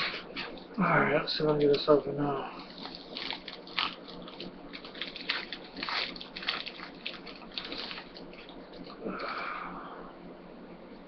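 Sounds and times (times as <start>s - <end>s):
foil wrapper crinkling and tearing: 2.5s - 9.5s.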